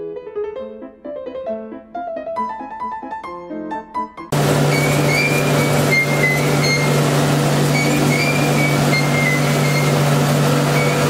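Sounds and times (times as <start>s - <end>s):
industrial machinery humming: 4.3s - 11.0s
short high squeaks: 4.4s - 11.0s.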